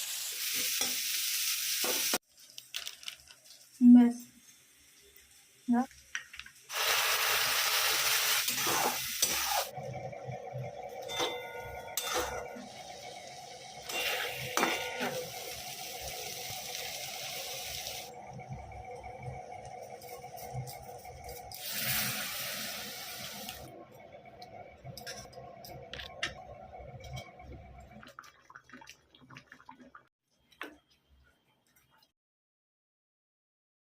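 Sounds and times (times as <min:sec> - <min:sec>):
food sizzling in oil: 0:00.0 - 0:09.7, 0:12.0 - 0:18.1, 0:19.9 - 0:23.7.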